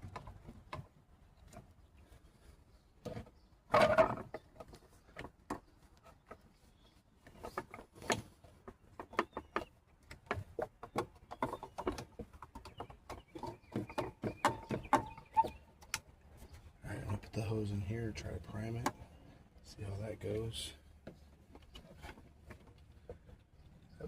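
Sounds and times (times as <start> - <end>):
pump hose handling clatter: 3.0 - 6.6, 7.2 - 17.5
irregular clicks and knocks: 7.2 - 17.4.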